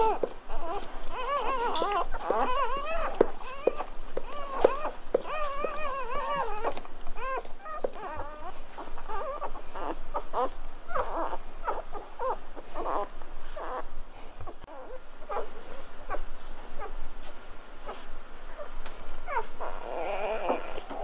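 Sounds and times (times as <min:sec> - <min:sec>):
puppies squeaking and whimpering: 0:00.0 - 0:17.0, 0:17.8 - 0:21.0.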